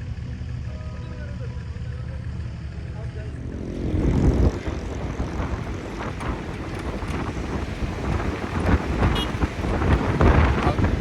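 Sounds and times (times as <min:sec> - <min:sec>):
jeep engine rough rumble: 0:00.0 - 0:11.0.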